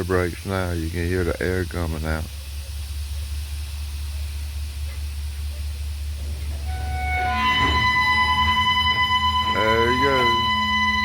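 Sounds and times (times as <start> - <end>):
diesel locomotive engine idling: 0.0 - 11.0
steady high-pitched tone: 4.0 - 11.0.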